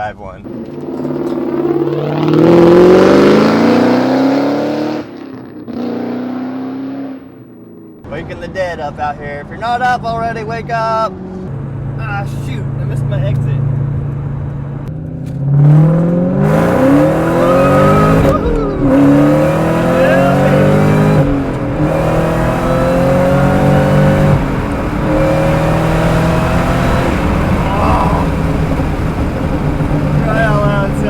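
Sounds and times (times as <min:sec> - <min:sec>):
car engine accelerating hard: 0:00.5 - 0:31.0.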